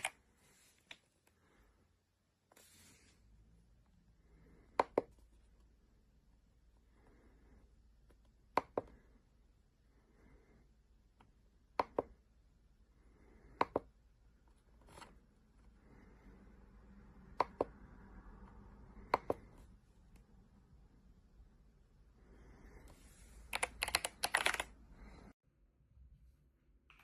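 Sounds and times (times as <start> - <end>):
mechanical keyboard key clicks: 23.5 - 24.7.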